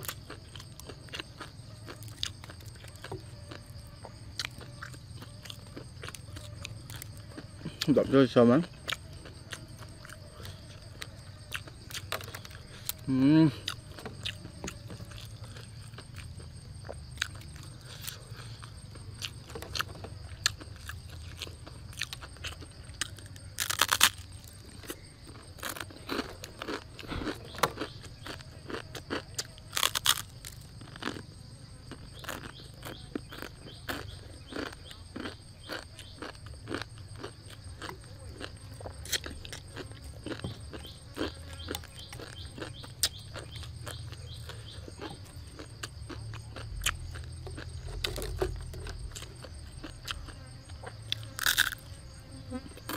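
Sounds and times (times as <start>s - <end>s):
dry noodles crunching: 8.8s - 51.9s.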